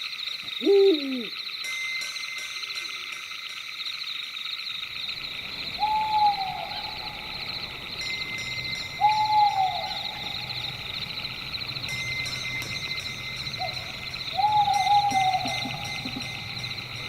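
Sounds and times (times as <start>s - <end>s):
night insects chirring: 0.0s - 17.0s
owl hooting: 0.5s - 1.4s, 5.6s - 7.6s, 9.0s - 11.0s, 13.6s - 16.9s.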